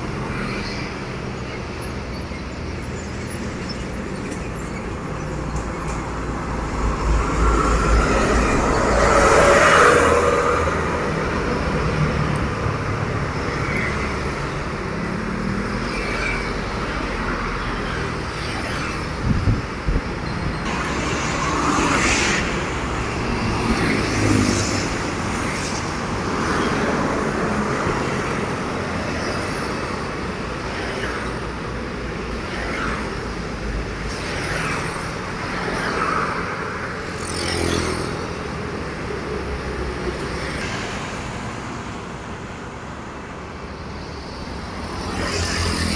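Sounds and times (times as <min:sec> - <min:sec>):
road traffic passing: 0:00.0 - 0:45.9.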